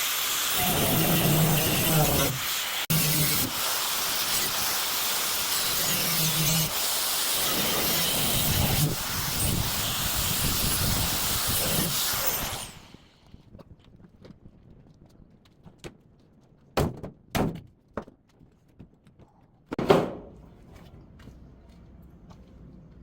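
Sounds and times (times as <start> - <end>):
power tool hissing: 0.0 - 13.1.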